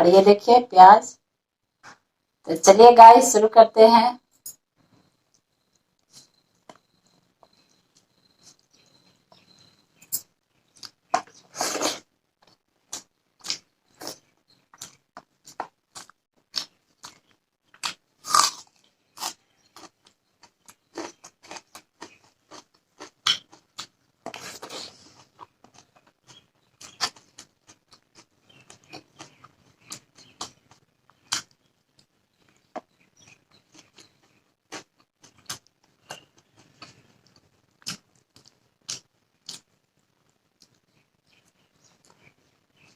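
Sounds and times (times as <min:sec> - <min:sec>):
person chewing food: 0:10.6 - 0:42.9
crunchy bites: 0:10.7 - 0:32.9, 0:33.7 - 0:39.7.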